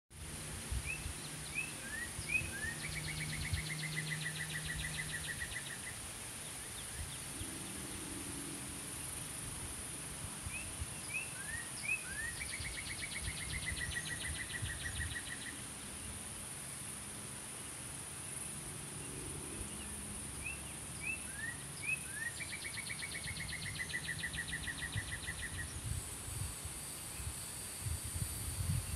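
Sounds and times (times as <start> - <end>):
insects droning: 0.2 - 28.9
songbird chirping and trilling: 0.7 - 8.2, 10.4 - 16.2, 18.4 - 26.0.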